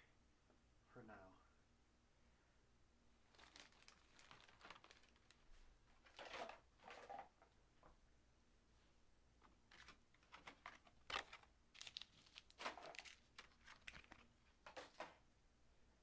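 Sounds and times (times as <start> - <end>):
packaging crinkling and rustling: 3.3 - 7.5, 9.4 - 15.2.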